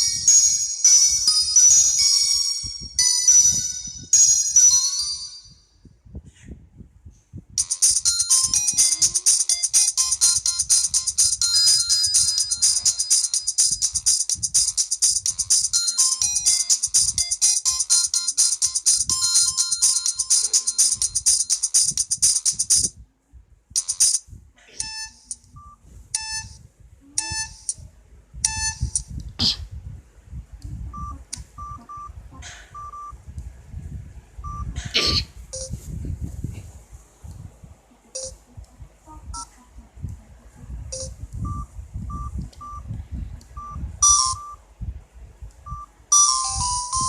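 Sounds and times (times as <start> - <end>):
ringtone of buzzy beeps: 0.0 - 5.6, 7.6 - 22.9, 23.8 - 26.6, 27.2 - 27.8, 28.4 - 29.1, 31.0 - 33.2, 34.4 - 35.8, 38.2 - 38.4, 40.9 - 42.8, 43.6 - 44.6, 45.7 - 47.0
fast jingling ringtone: 0.0 - 5.7, 7.6 - 22.9, 23.8 - 24.2, 44.0 - 44.6, 46.1 - 47.0
phone key beeps: 24.8 - 26.6, 32.7 - 33.2, 34.4 - 35.8, 38.2 - 38.4, 41.0 - 42.8, 43.6 - 44.6.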